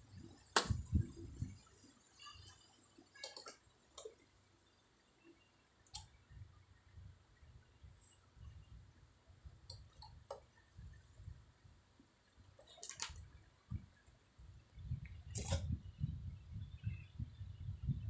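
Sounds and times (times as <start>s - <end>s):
soft low rumble: 0.0s - 1.7s, 13.5s - 18.0s
faint clicks: 2.2s - 4.3s.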